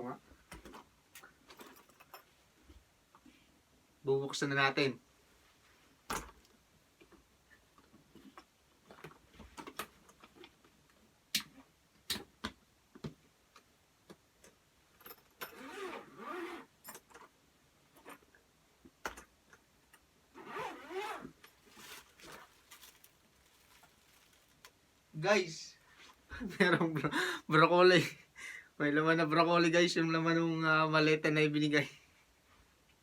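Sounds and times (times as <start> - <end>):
zipper: 15.4 - 17.3, 17.9 - 18.3, 20.3 - 22.5
rustling: 20.4 - 24.9.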